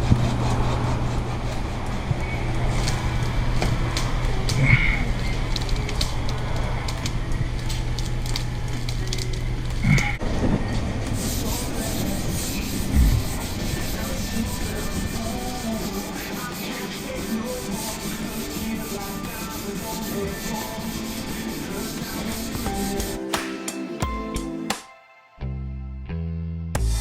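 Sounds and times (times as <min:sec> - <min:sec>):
sanding car body panel: 0:11.1 - 0:23.2.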